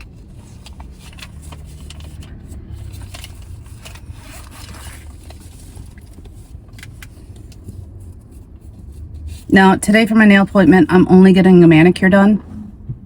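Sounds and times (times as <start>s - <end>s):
rustling scrape: 0.0s - 9.5s.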